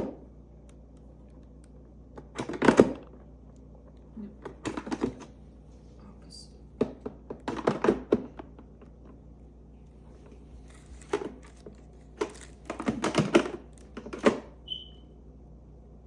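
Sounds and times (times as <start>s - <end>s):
plastic parts clicking and knocking: 4.4s - 5.3s, 6.8s - 9.0s, 10.7s - 14.5s
short high beep: 14.7s - 15.0s.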